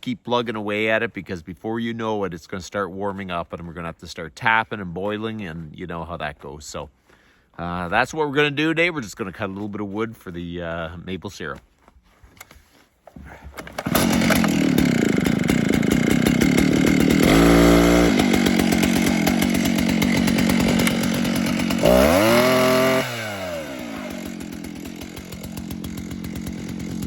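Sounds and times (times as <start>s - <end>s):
chainsaw idling and revving: 13.6s - 27.0s.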